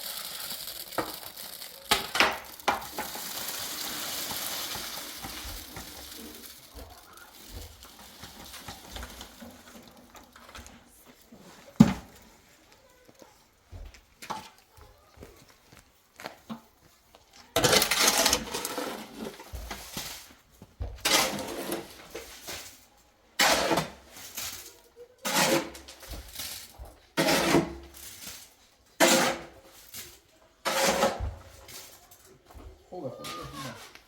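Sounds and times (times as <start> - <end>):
metal tool scraping wet mortar: 17.6 - 19.5, 21.0 - 22.3, 23.4 - 24.2, 25.2 - 26.0, 27.2 - 28.0, 29.0 - 29.6, 30.6 - 31.3.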